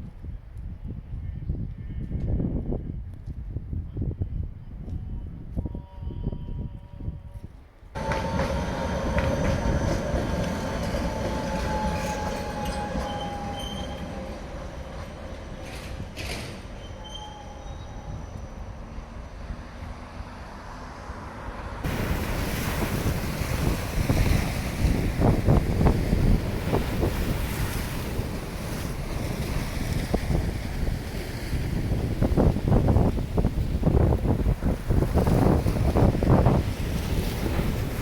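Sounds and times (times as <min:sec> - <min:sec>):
wind on microphone: 0:00.0 - 0:15.3, 0:21.8 - 0:38.0
tram wheels squealing on rails: 0:08.0 - 0:20.2, 0:21.8 - 0:31.8
surf: 0:21.9 - 0:38.0.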